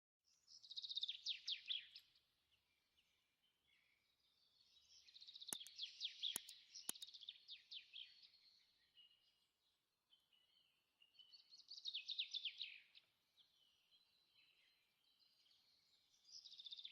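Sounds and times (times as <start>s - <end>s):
small bird chirping: 3.7s - 8.4s
sharp clicks: 5.6s - 5.8s, 6.4s - 7.1s.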